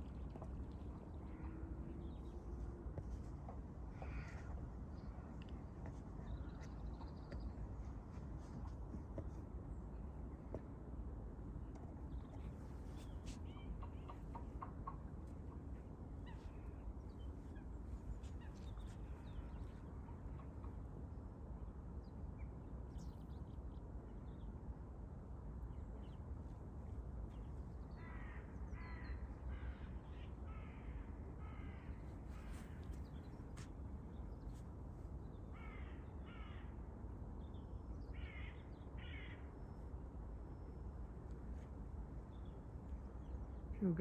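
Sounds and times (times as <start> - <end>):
crow cawing: 30.5 - 31.9, 35.6 - 36.7, 38.2 - 39.4.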